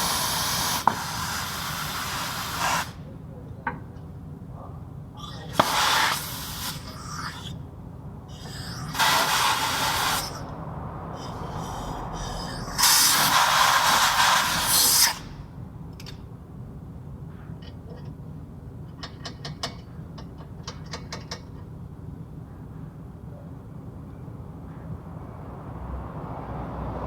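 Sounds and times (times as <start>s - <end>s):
pressurised spray hissing: 0.0s - 3.0s, 5.2s - 7.5s, 8.3s - 15.5s.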